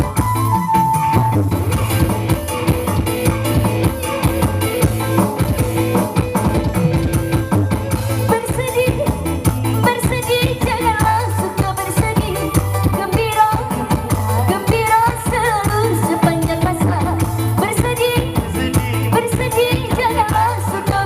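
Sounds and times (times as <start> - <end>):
live band music: 0.0 - 21.0
person singing: 8.0 - 21.0.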